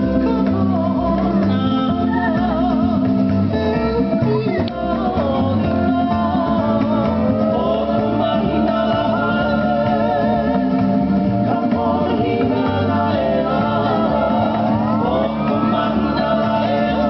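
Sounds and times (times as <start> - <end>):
steady bass line: 0.0 - 17.0.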